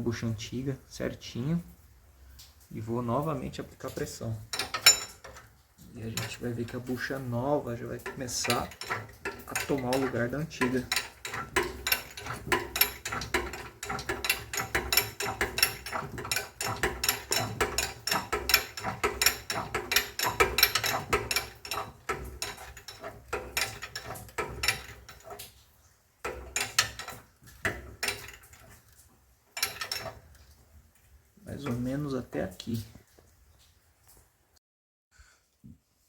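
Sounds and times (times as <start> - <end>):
shop press clicking: 4.5 - 5.5, 6.1 - 25.5, 26.2 - 28.7, 29.6 - 30.3.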